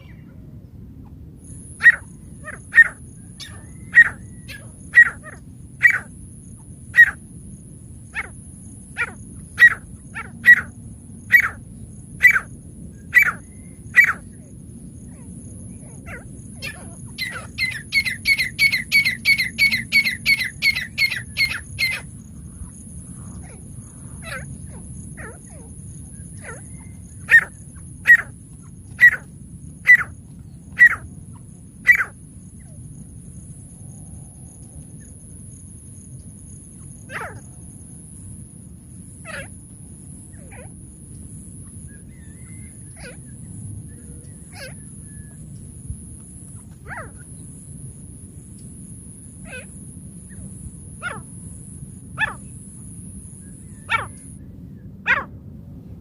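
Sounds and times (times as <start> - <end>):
francolin calling: 1.4 - 7.3, 8.1 - 32.8, 39.2 - 47.6, 49.4 - 54.4.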